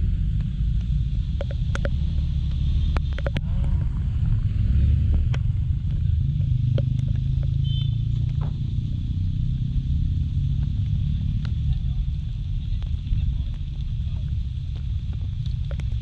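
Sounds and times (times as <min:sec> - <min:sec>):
road noise: 0:00.0 - 0:16.0
wind noise: 0:00.0 - 0:16.0
scooter engine rumble: 0:10.3 - 0:16.0.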